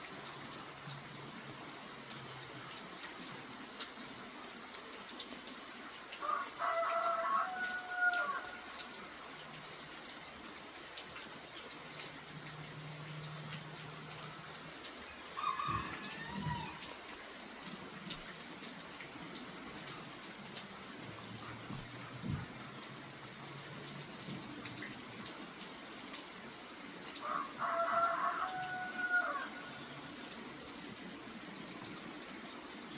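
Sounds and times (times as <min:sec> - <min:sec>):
steady rain falling: 0:00.0 - 0:32.9
water drips and ticks: 0:00.0 - 0:32.9
chickens calling: 0:15.4 - 0:17.0.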